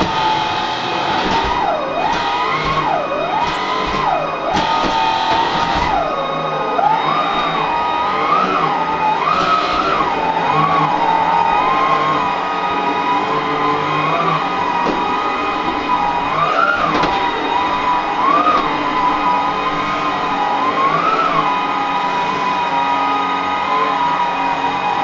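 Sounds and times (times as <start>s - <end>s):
vacuum cleaner motor whine: 0.0s - 25.0s.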